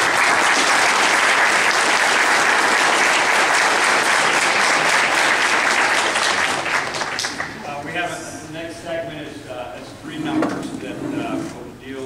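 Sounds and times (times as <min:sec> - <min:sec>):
audience applauding: 0:00.0 - 0:07.6.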